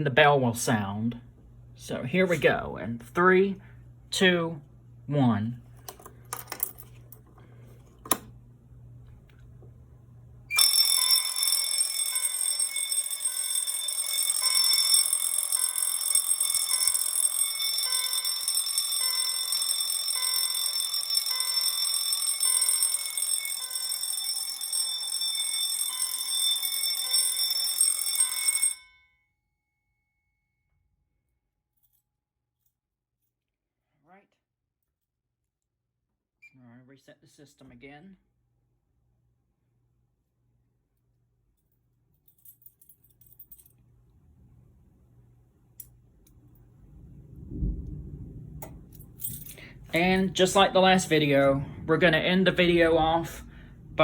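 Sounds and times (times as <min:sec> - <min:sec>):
fire alarm bell ringing: 0:10.5 - 0:29.3.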